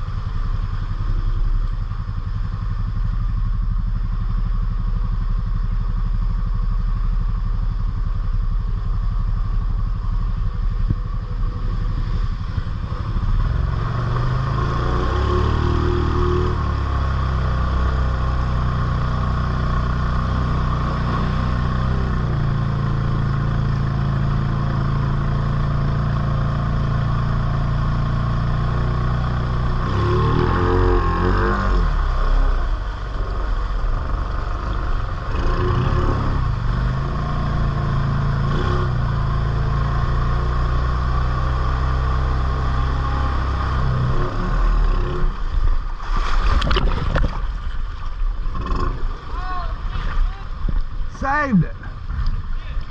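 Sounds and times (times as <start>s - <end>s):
atv engine revving: 9.4s - 45.8s, 48.4s - 52.5s.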